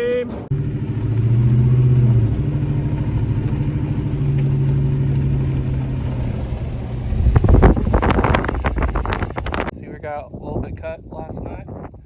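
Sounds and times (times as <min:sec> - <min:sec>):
vehicle engine running: 0:00.5 - 0:09.7.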